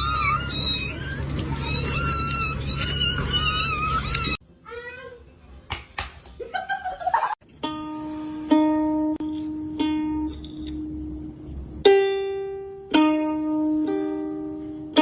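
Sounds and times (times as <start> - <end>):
plucked string notes: 7.4 - 15.0.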